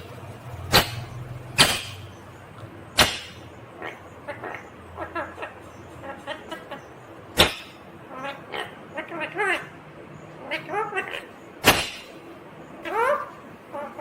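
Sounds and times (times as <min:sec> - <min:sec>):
parrot shrieking: 0:03.0 - 0:06.8, 0:07.4 - 0:09.7, 0:10.4 - 0:12.1, 0:12.8 - 0:14.0
parrot chattering chirps: 0:03.0 - 0:09.8, 0:10.4 - 0:12.2, 0:12.8 - 0:14.0.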